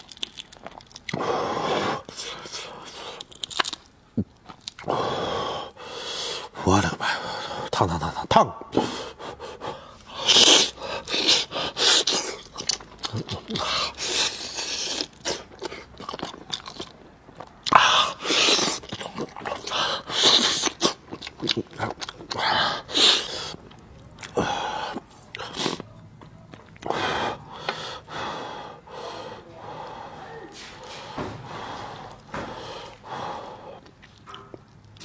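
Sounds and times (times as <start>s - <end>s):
person chewing meat: 0.0s - 1.3s, 2.0s - 4.9s, 9.3s - 28.0s, 31.7s - 35.0s.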